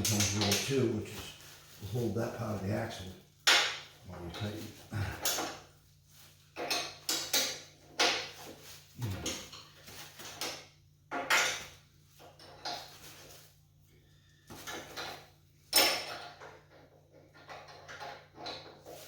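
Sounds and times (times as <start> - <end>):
metal wrenches clinking and scraping: 6.6 - 8.4, 14.6 - 19.0.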